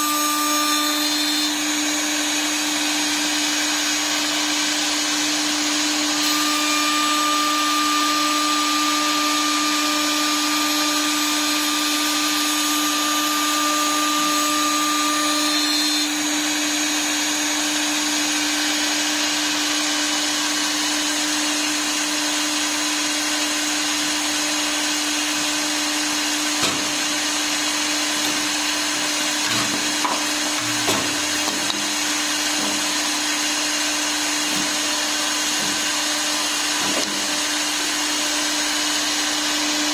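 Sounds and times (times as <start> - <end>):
lathe spindle whining: 21.9 - 39.9.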